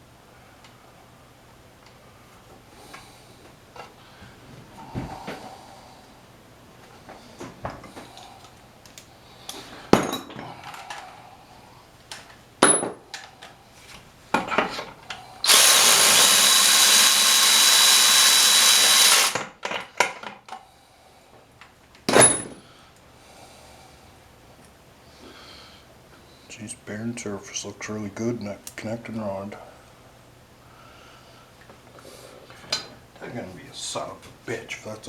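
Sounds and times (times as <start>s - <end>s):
power tool whirring: 15.4s - 19.5s.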